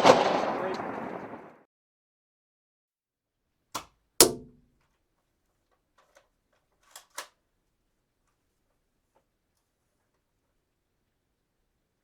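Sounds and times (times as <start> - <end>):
gunshots: 0.0 - 1.6.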